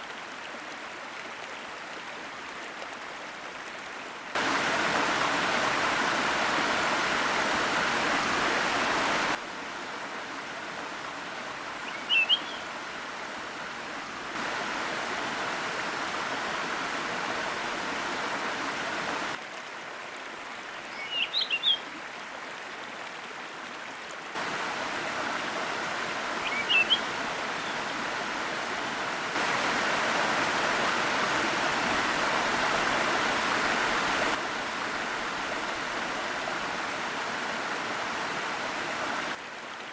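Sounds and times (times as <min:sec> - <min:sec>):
waterfall rushing: 0:04.3 - 0:09.4, 0:10.9 - 0:19.4, 0:24.3 - 0:39.4
high bird chirps: 0:11.9 - 0:12.6, 0:21.0 - 0:21.8, 0:26.4 - 0:27.0.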